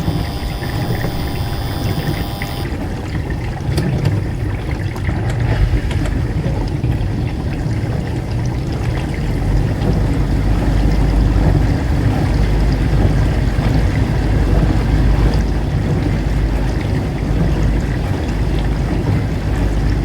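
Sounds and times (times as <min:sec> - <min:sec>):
faint ticks: 0:00.0 - 0:02.6
appliance humming: 0:00.0 - 0:02.7
low churning sloshing rumble: 0:02.8 - 0:20.0.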